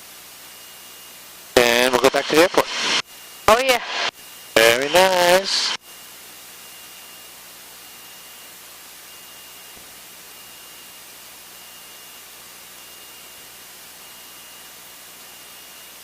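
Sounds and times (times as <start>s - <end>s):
faint high whine: 0.4s - 16.0s
electronic hiss: 1.6s - 5.8s.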